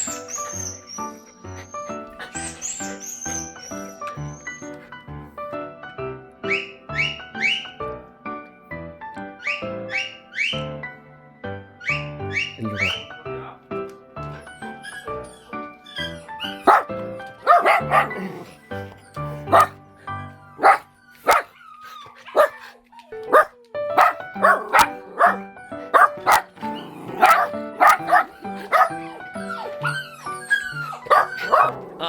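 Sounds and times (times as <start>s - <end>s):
background music: 0.0s - 32.0s
dogs barking: 11.9s - 13.1s, 14.3s - 32.0s.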